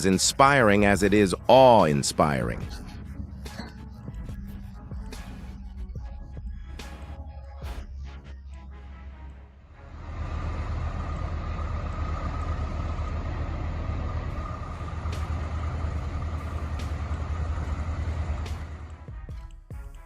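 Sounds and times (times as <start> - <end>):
heavy truck engine rumbling: 0.0 - 5.8, 9.7 - 19.2.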